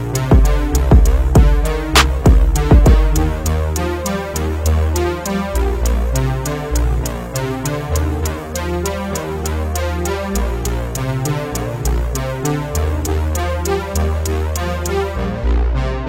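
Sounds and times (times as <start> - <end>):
drum machine hi-hat: 0.0 - 15.2
synthesizer bass notes: 0.0 - 16.0
kick drum: 0.3 - 3.4.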